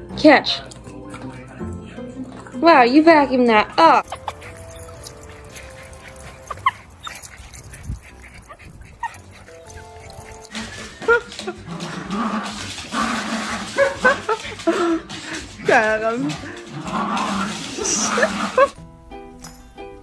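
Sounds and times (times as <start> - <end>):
light background music: 0.0 - 20.0
dog whimpering and yipping: 4.0 - 10.6.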